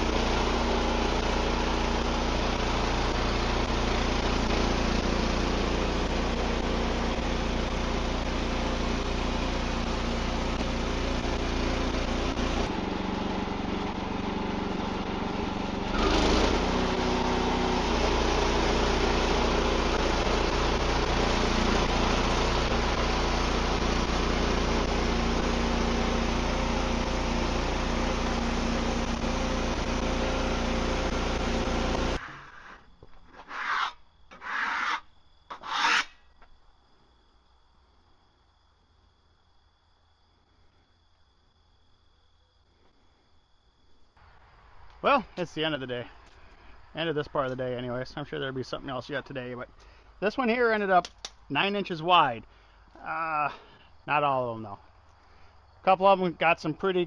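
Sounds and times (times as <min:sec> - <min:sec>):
sawmill engine running: 0:00.0 - 0:32.8, 0:44.2 - 0:57.0.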